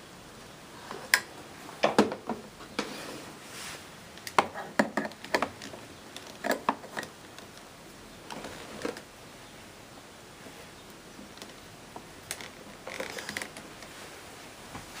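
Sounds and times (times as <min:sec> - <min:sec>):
hard plastic parts clicking: 0:04.2 - 0:09.1, 0:12.2 - 0:13.9.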